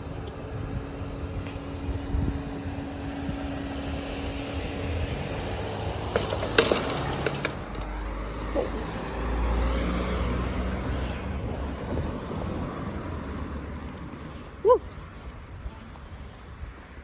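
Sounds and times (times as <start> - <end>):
vehicle engines rumbling: 0.0 - 17.0
sharp knocks: 6.0 - 8.2.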